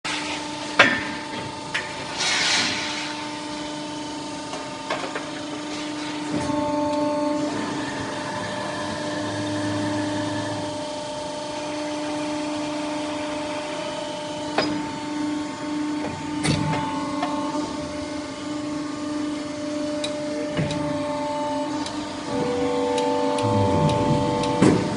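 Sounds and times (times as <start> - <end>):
machine motor hum: 19.5 - 24.9.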